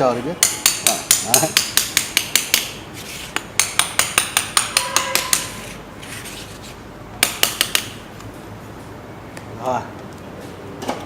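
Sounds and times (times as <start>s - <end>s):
small hammer tapping wires: 0.4s - 2.8s, 3.4s - 5.6s, 7.2s - 8.3s.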